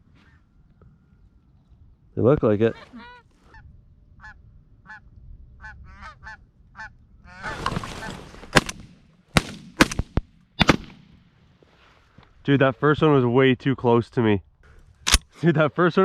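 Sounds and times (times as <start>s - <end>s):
goose honks: 4.2s - 8.2s
shotgun shots: 8.5s - 11.3s.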